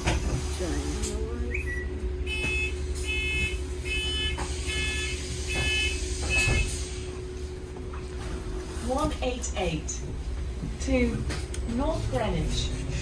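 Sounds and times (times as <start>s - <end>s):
bus engine rumble: 0.0s - 13.0s
bus door warning beeps: 1.5s - 7.2s.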